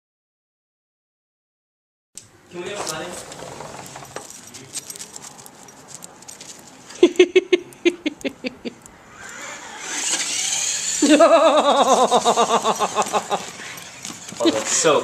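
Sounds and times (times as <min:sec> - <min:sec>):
toy car motor whirring: 0:08.8 - 0:15.0.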